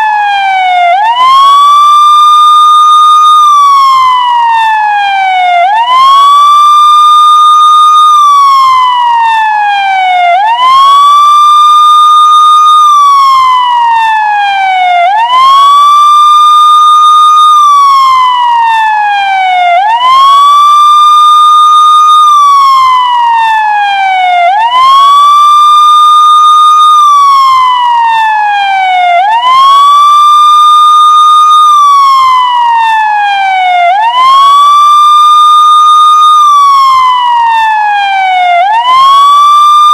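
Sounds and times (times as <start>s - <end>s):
police car siren wailing: 0.0s - 39.9s.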